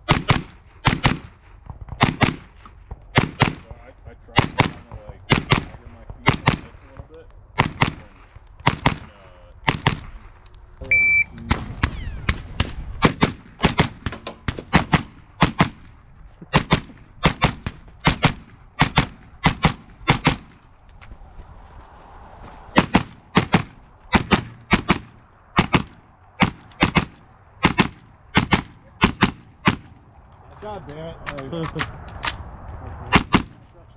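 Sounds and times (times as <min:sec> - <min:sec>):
rifle shots: 0:00.0 - 0:03.8, 0:04.4 - 0:06.8, 0:07.6 - 0:10.3, 0:11.4 - 0:20.7, 0:22.7 - 0:30.1, 0:33.1 - 0:33.6
short steady beep: 0:10.9 - 0:11.4.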